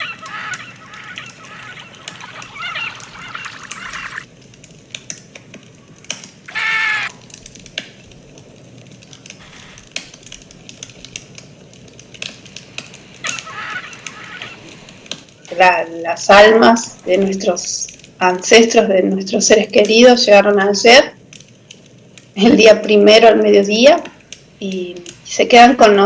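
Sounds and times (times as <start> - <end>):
bird honking call: 0.0 - 4.2, 6.5 - 7.1, 13.2 - 14.6
birds warbling: 0.0 - 4.3, 6.5 - 7.1, 9.3 - 9.9, 13.2 - 14.7.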